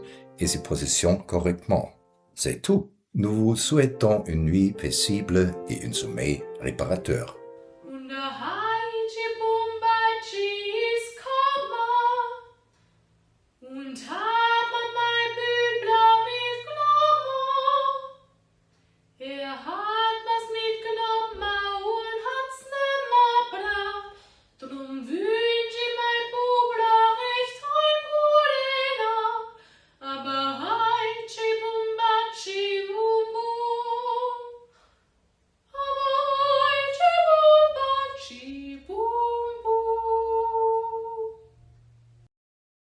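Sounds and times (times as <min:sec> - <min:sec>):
high voice singing slow melody: 0:00.4 - 0:07.4.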